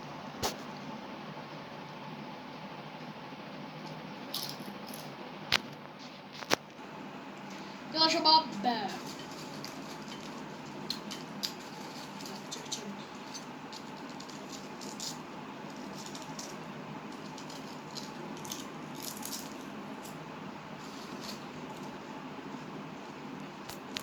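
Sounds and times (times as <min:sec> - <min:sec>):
steady low hiss: 0:00.0 - 0:24.0
potato chips crunching: 0:09.0 - 0:20.2.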